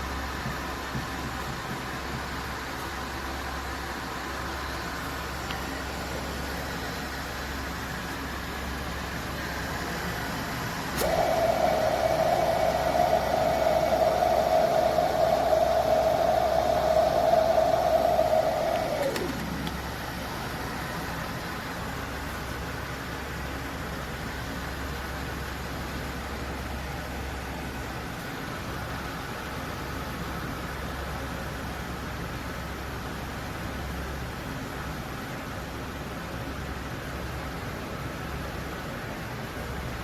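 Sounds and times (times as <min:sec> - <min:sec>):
background hiss: 0:11.0 - 0:19.9.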